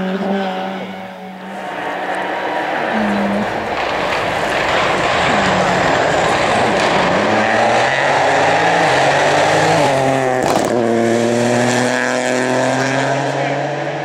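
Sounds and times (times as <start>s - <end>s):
sharp crack: 3.4s - 8.6s, 9.5s - 10.8s
rally car engine running hard: 3.4s - 14.0s.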